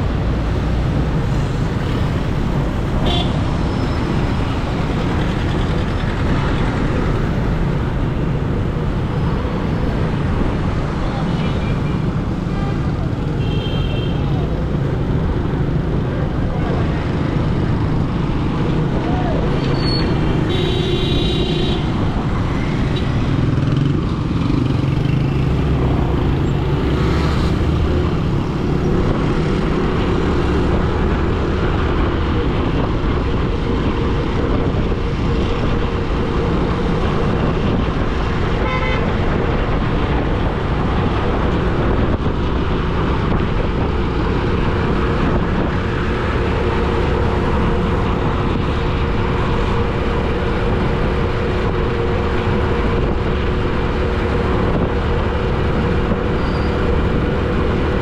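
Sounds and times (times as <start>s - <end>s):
traffic engine and road noise: 0.0s - 58.0s.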